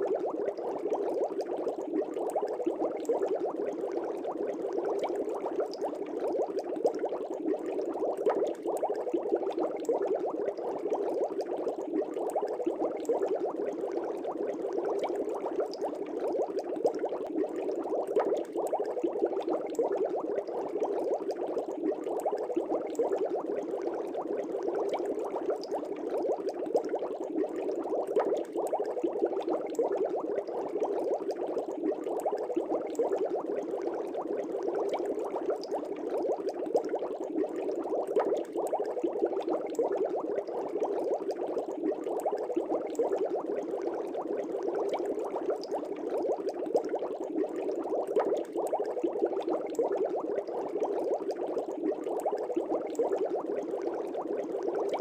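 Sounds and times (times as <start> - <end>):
aquarium water bubbling: 0.0 - 55.0.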